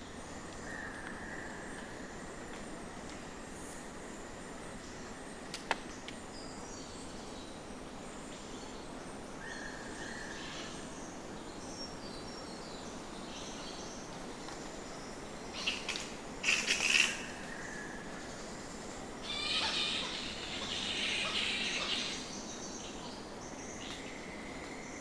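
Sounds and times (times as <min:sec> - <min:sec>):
steady hiss: 0:00.0 - 0:25.0
bats squeaking: 0:19.2 - 0:22.2.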